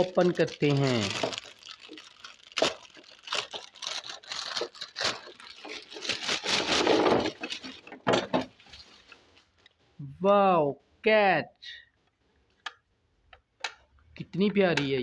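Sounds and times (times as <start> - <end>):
package crinkling and tearing: 0.0 - 7.9.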